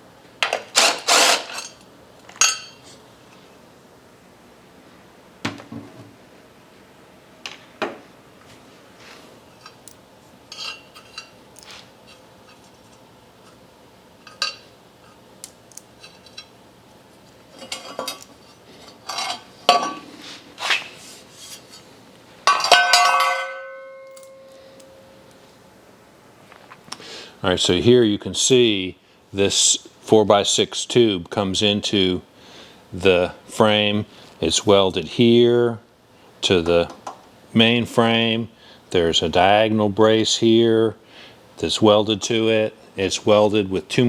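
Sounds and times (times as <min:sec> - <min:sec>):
tools clinking on metal: 0:00.8 - 0:02.9, 0:09.6 - 0:12.6, 0:14.2 - 0:14.7, 0:17.6 - 0:18.3, 0:19.0 - 0:20.0, 0:22.5 - 0:25.0.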